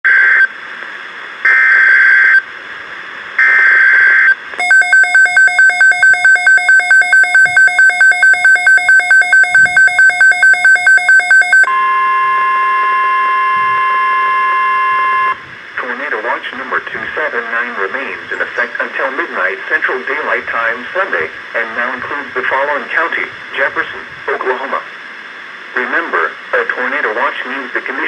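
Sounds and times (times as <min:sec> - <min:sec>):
steady warning alarm tone: 0:03.4 - 0:15.4
rapid electronic beeping: 0:04.6 - 0:11.7
shrill digital header bursts: 0:04.6 - 0:11.7.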